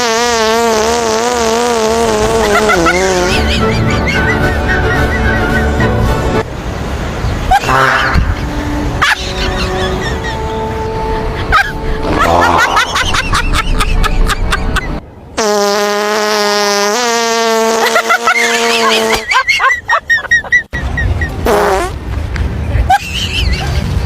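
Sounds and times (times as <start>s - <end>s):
sputtering fart pops: 0.0s - 3.4s, 15.4s - 19.2s, 21.4s - 22.0s
long buzzing fart: 0.0s - 3.8s, 12.0s - 13.6s, 15.4s - 19.3s, 21.4s - 22.0s.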